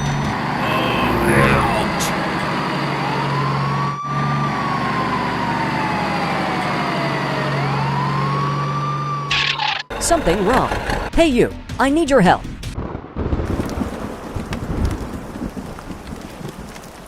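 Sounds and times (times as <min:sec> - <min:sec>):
emergency siren wailing: 0:00.6 - 0:09.3.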